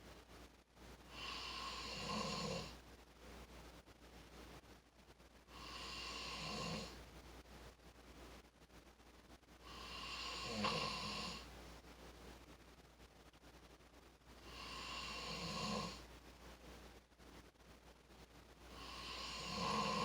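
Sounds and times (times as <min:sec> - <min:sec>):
person snoring: 0:01.1 - 0:02.7, 0:05.5 - 0:07.0, 0:09.7 - 0:11.4, 0:14.4 - 0:16.0, 0:18.7 - 0:20.0.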